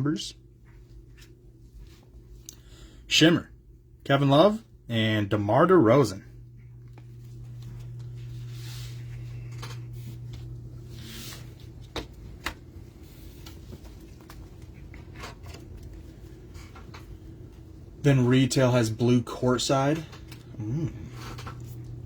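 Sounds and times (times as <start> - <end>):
steady low hum: 0.0 - 22.0
cards and wrappers swishing: 7.1 - 16.5.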